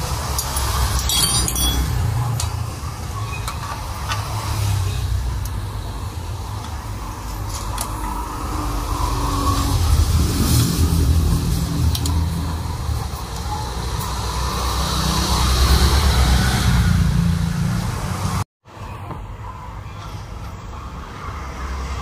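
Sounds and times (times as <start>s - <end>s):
light metallic clinks: 0.3s - 2.6s.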